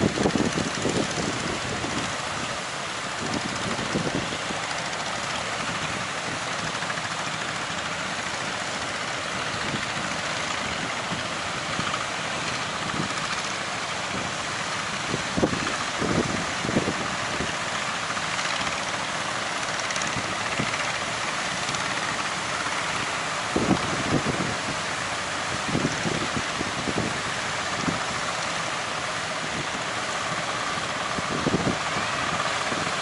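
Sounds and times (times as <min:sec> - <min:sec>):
boat engine running: 0:00.0 - 0:33.0
surf hiss: 0:00.0 - 0:33.0
wind: 0:00.0 - 0:33.0.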